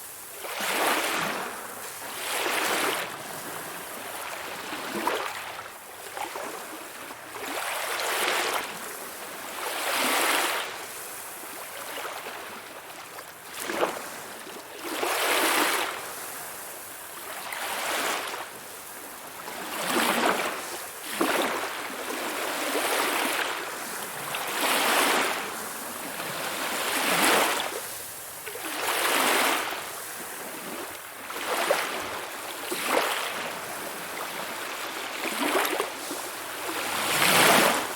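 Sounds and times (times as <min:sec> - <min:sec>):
sea waves washing ashore: 0:00.0 - 0:37.9.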